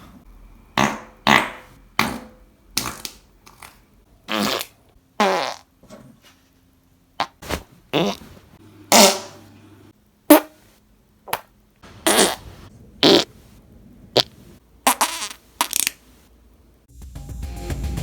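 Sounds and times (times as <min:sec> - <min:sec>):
person farting: 0:00.8 - 0:01.7, 0:04.3 - 0:05.7, 0:07.2 - 0:09.4, 0:10.3 - 0:10.6, 0:11.3 - 0:13.3, 0:14.2 - 0:16.0
music: 0:16.9 - 0:18.0.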